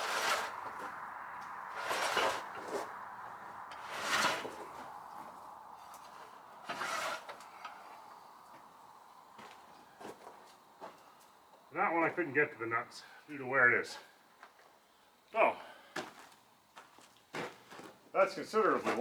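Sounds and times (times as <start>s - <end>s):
timber scraping as dragged: 0.0s - 7.9s.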